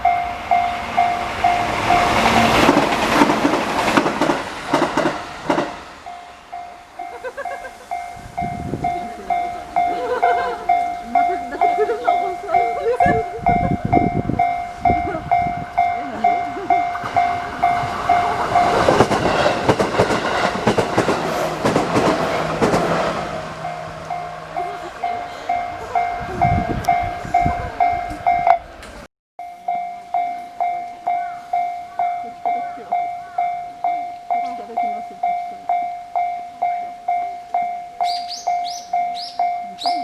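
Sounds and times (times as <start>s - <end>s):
train passing: 0.0s - 40.0s
level crossing bell dinging: 6.1s - 19.0s, 23.6s - 28.8s, 29.4s - 40.0s.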